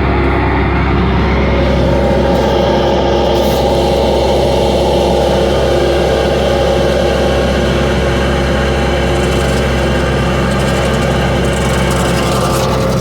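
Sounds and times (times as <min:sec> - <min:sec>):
engine running at high throttle: 0:00.0 - 0:13.0
stump grinder chewing wood: 0:06.8 - 0:13.0.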